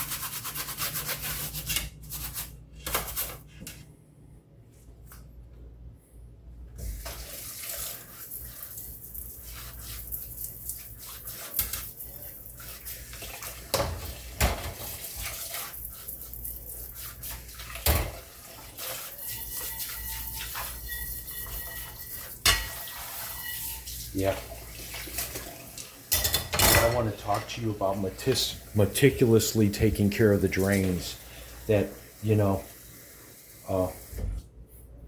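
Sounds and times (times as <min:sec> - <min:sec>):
faucet running into sink: 0:16.7 - 0:34.3.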